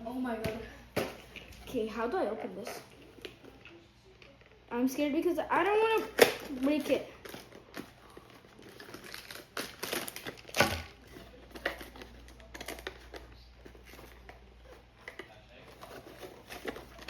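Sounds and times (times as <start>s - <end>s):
packaging crinkling: 5.8s - 17.0s.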